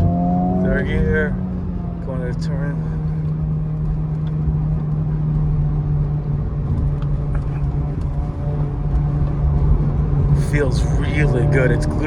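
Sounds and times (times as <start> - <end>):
car engine droning: 0.0 - 12.0
tyre and road noise: 0.0 - 12.0.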